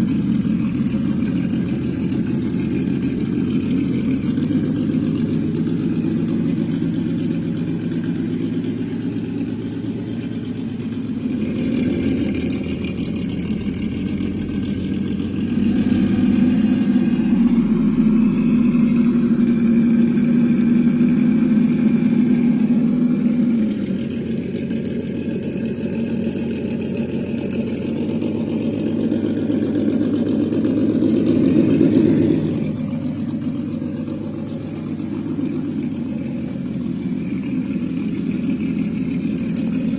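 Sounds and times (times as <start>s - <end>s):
simulated engine idling and revving: 0.0s - 39.9s.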